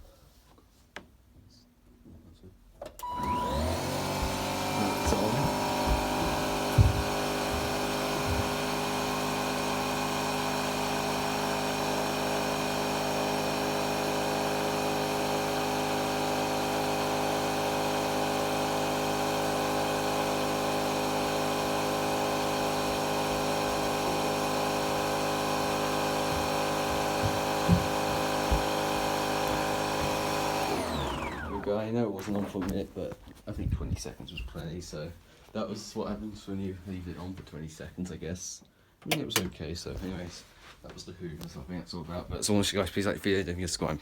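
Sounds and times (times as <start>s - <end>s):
vacuum cleaner motor whining: 3.0s - 31.9s
short knocks: 4.2s - 8.6s, 26.3s - 28.7s.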